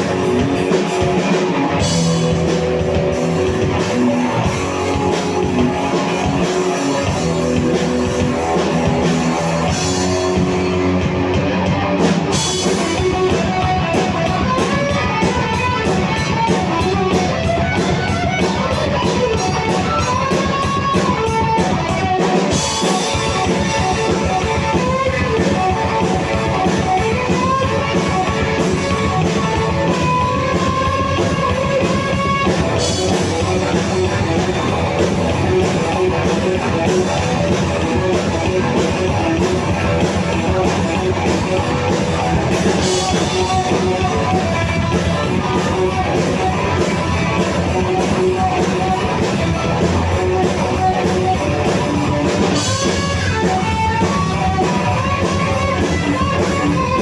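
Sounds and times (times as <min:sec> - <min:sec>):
live rock band playing: 0:00.0 - 0:57.0.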